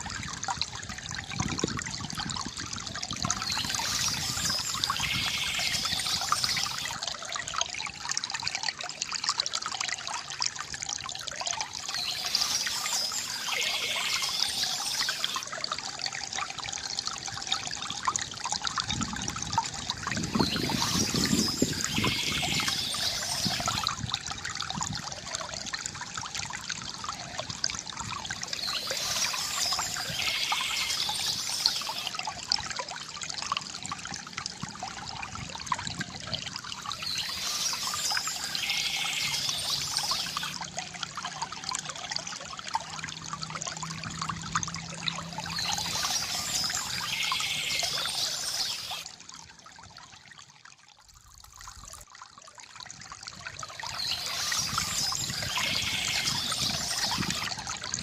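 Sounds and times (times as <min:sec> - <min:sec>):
water trickling from a fountain: 0:00.0 - 0:58.0
birds chirping: 0:03.3 - 0:07.0, 0:11.9 - 0:15.4, 0:20.3 - 0:23.8, 0:28.6 - 0:32.1, 0:36.9 - 0:40.6, 0:45.5 - 0:49.0, 0:53.9 - 0:57.5.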